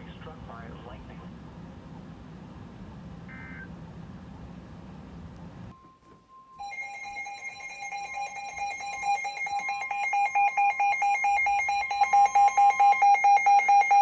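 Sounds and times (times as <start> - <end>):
shrill electronic alarm tone: 5.8 - 14.0.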